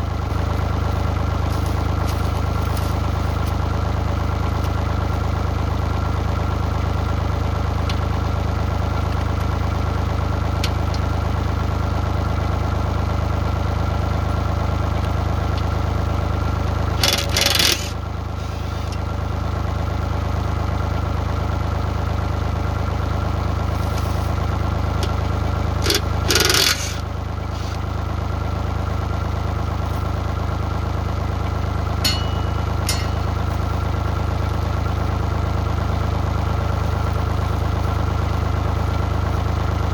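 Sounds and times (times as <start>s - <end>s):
diesel engine idling: 0.0s - 39.9s
harsh scraping: 17.0s - 18.9s, 25.9s - 27.8s.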